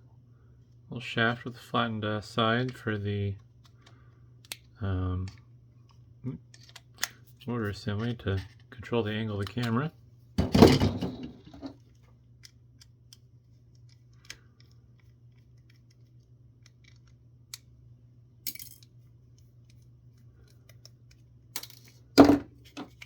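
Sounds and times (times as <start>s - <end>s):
steady low hum: 0.0s - 23.0s
plastic parts clicking: 6.5s - 7.2s, 12.4s - 17.7s.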